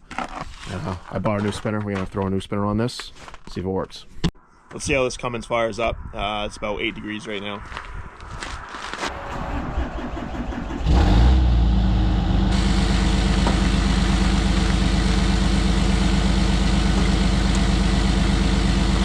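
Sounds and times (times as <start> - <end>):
diesel engine idling: 9.2 - 19.0.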